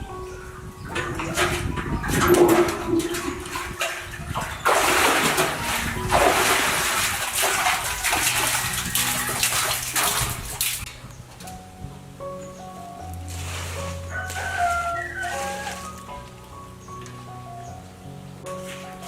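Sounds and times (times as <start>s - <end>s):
water splashing and sloshing: 0.8s - 11.7s, 13.2s - 17.2s.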